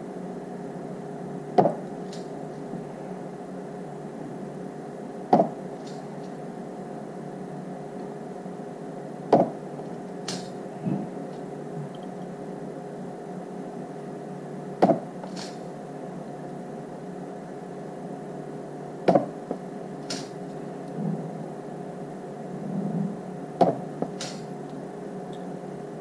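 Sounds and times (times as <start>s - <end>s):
spot welder snap: 10.3s - 10.6s, 14.8s - 15.6s, 20.0s - 20.4s, 23.6s - 24.5s.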